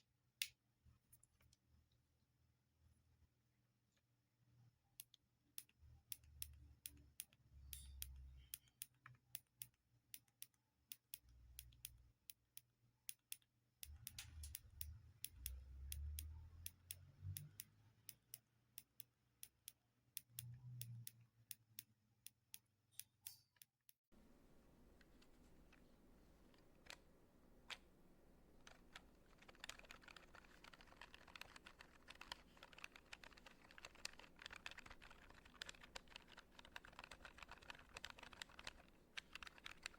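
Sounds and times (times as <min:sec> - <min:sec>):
buttons and keys clicking: 0:24.2 - 0:39.9.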